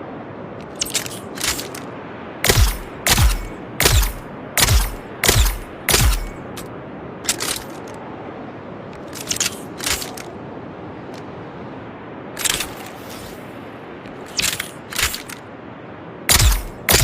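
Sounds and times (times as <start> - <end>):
dart rifle shots: 2.4 - 6.4, 16.3 - 17.0.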